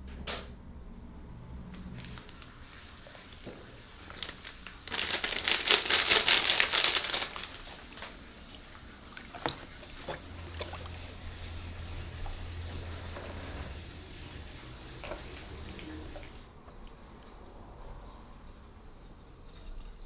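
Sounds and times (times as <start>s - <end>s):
low steady hum: 0.0s - 20.0s
crinkly material crumpling: 1.7s - 10.2s.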